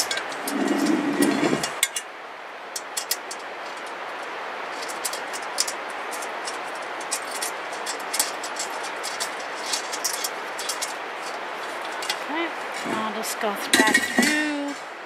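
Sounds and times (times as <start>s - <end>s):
rushing background noise: 0.0s - 15.0s.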